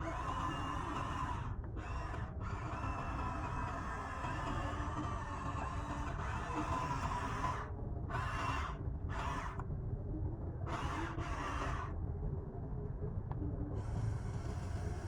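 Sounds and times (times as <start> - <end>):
small electric motors running: 0.0 - 9.6, 10.8 - 11.9.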